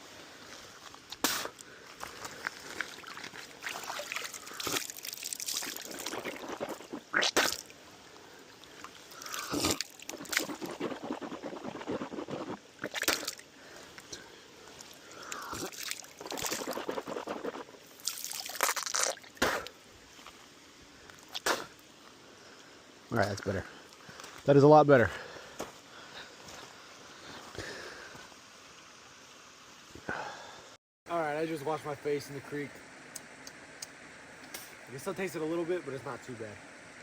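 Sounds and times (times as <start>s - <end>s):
trickling creek: 0.0s - 37.0s
hands splashing water: 2.3s - 7.7s, 9.1s - 13.4s, 14.8s - 19.6s.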